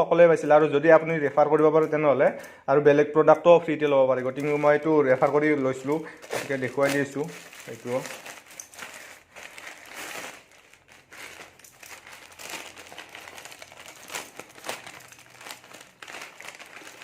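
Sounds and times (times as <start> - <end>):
packaging crinkling and rustling: 4.1 - 17.0.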